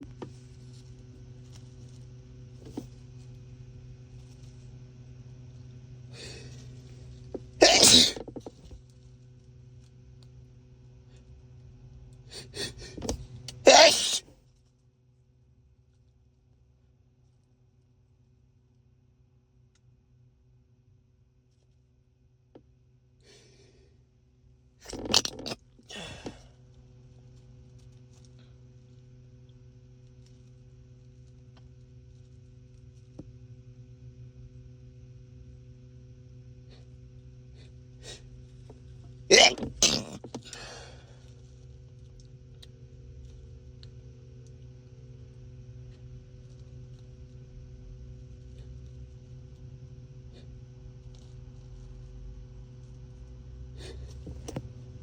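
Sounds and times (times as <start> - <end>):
low steady hum: 0.0 - 55.0
man sneezing: 7.6 - 8.2, 12.4 - 14.2, 24.9 - 26.4, 39.3 - 41.0
breathy intake: 13.7 - 14.2, 25.0 - 26.5, 39.3 - 41.2
breathy exhale: 25.9 - 26.5, 40.5 - 41.2.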